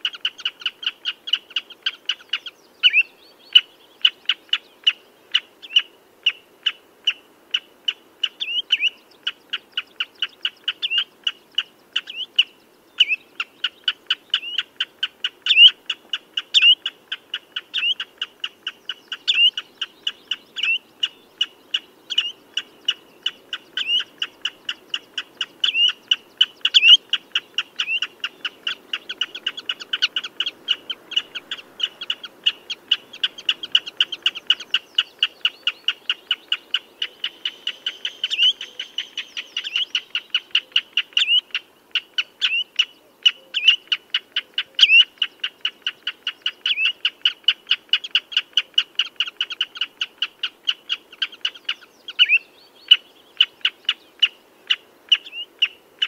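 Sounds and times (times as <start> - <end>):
bird slurred call: 0.0 - 56.0.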